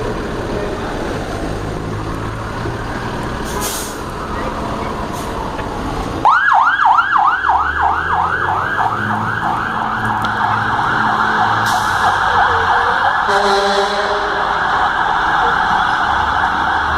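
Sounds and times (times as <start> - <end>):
fire truck siren yelping: 2.0 - 16.9.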